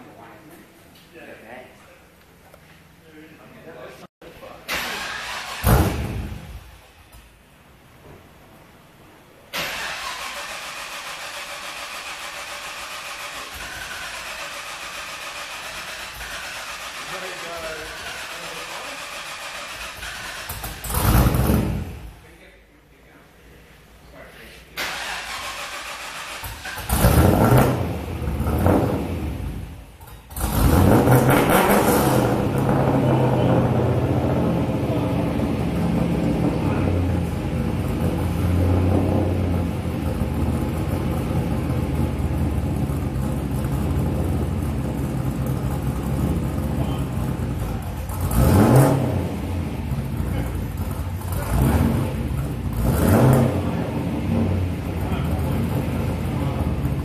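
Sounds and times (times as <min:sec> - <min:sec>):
car engine revving hard: 0:19.0 - 0:22.0, 0:26.7 - 0:29.6, 0:30.3 - 0:42.0, 0:45.8 - 0:56.8.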